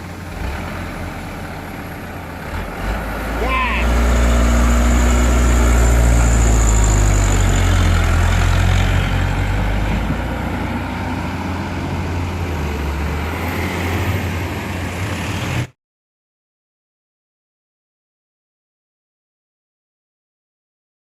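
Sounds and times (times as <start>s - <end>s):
heavy diesel engine droning: 0.0s - 15.7s.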